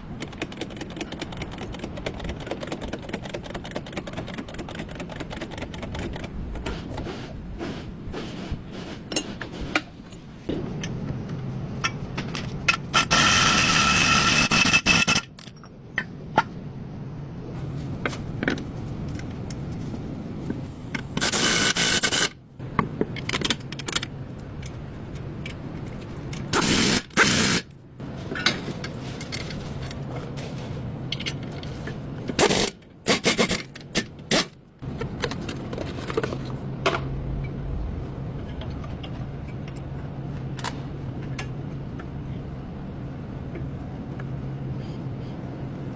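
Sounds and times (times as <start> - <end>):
loud tool bursts: 12.9 - 15.3, 21.2 - 22.4, 26.6 - 27.6.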